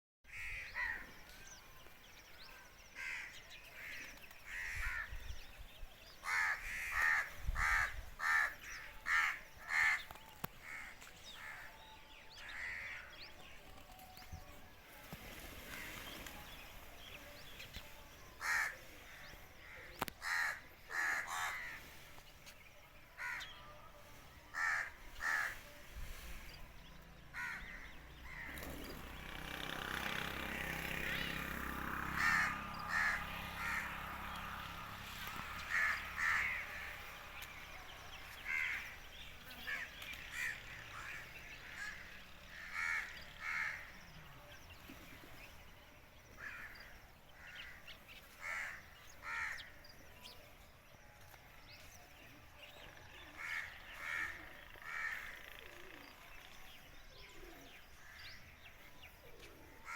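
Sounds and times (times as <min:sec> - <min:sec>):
crows cawing: 0:00.3 - 0:01.0, 0:03.0 - 0:05.2, 0:06.2 - 0:11.7, 0:12.5 - 0:13.1, 0:18.4 - 0:22.0, 0:23.2 - 0:23.5, 0:24.5 - 0:25.8, 0:27.3 - 0:28.7, 0:32.1 - 0:34.6, 0:35.3 - 0:37.4, 0:38.4 - 0:43.9, 0:46.4 - 0:46.8, 0:47.4 - 0:49.7, 0:53.4 - 0:55.6.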